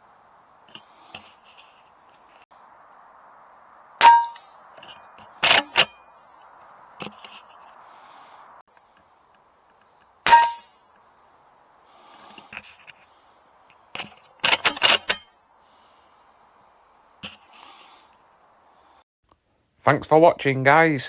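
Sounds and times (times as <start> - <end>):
air rifle shot metallic clang: 10.3 - 10.8.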